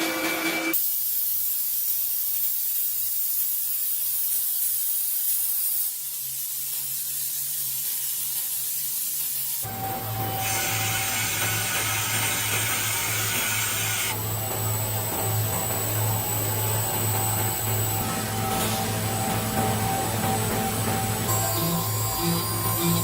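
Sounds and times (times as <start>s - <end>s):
spray hissing: 0.7s - 23.0s
machine humming: 9.6s - 23.0s.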